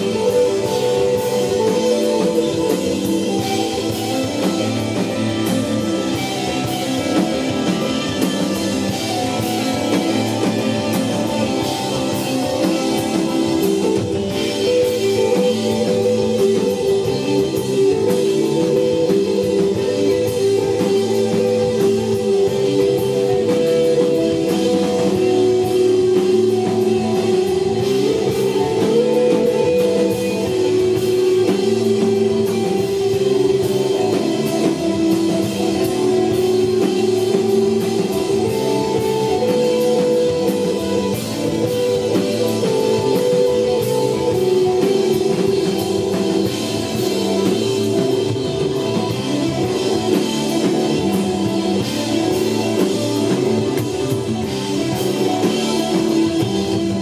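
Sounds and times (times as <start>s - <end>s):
bass line: 0.0s - 57.0s
drum kit with cymbals: 0.0s - 57.0s
electric guitar notes: 0.0s - 57.0s.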